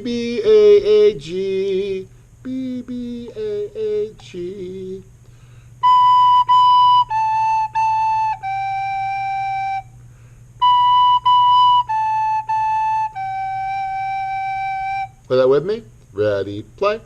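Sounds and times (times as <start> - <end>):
soprano recorder playing: 5.8 - 10.0, 10.6 - 15.3.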